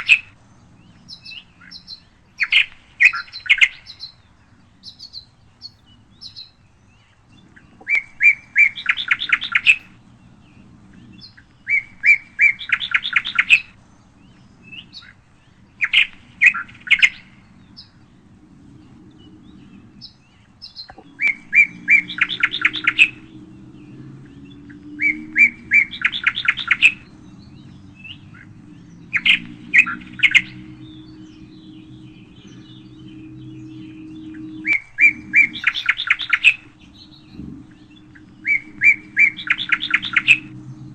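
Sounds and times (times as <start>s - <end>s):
faint low hum: 0.0s - 40.9s
songbird singing: 0.0s - 40.9s.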